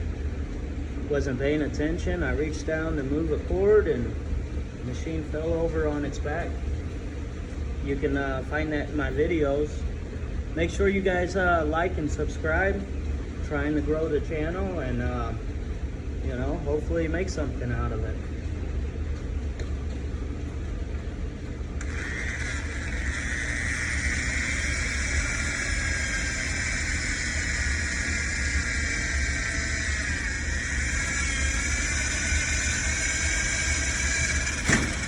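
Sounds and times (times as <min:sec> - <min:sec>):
electric drill boring into metal: 0:21.8 - 0:35.0
high wavering squeal of drill bit: 0:21.8 - 0:35.0.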